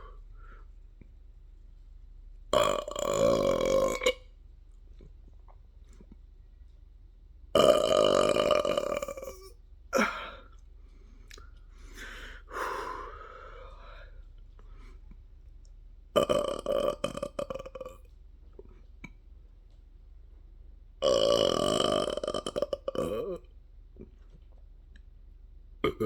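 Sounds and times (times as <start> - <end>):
person burping: 2.6 - 4.2, 7.6 - 10.5, 16.2 - 18.0, 21.0 - 23.5.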